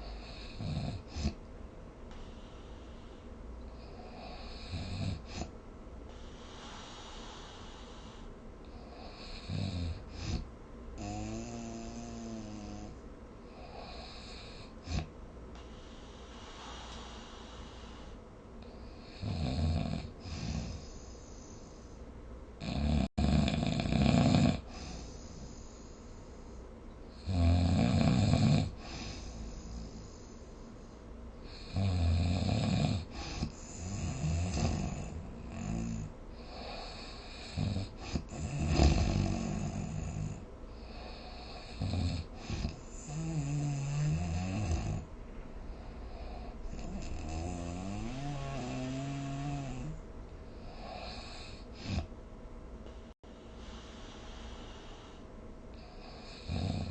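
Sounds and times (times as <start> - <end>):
person snoring: 0.0 - 1.4, 3.8 - 5.5, 6.1 - 13.0, 13.6 - 21.7, 22.6 - 25.6, 27.2 - 30.2, 31.5 - 45.1, 46.0 - 50.0, 50.6 - 52.1, 53.6 - 56.9
quiet breathing: 0.0 - 56.9.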